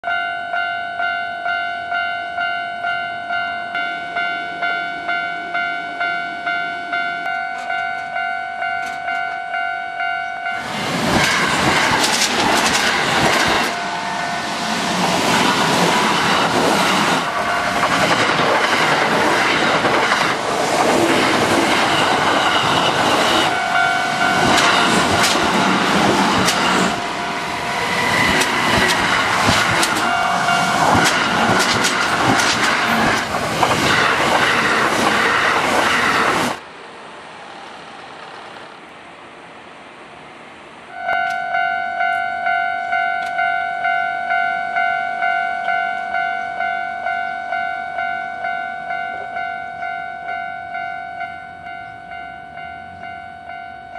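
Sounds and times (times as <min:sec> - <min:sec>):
level crossing bell ringing: 0:00.0 - 0:10.7, 0:23.2 - 0:25.8, 0:30.0 - 0:31.0, 0:41.0 - 0:53.9
train wheels clacking on rails: 0:10.6 - 0:36.6.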